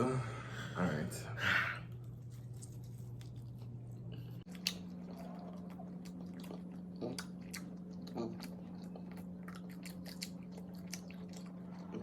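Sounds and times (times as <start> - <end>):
steady low hum: 0.0 - 12.0
wet chewing and lip-smacking: 1.9 - 12.0.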